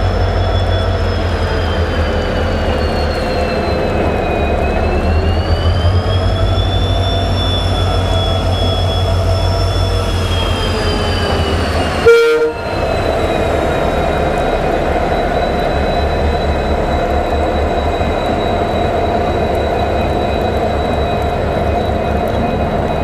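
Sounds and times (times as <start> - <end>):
diesel locomotive engine hum: 0.0 - 23.0
locomotive horn blast: 12.0 - 12.8.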